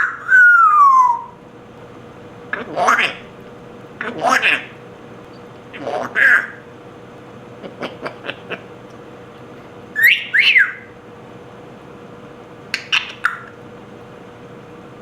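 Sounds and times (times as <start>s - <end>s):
parrot swooping whistles: 0.0s - 1.4s, 10.0s - 10.9s
parrot clicks: 12.7s - 13.6s.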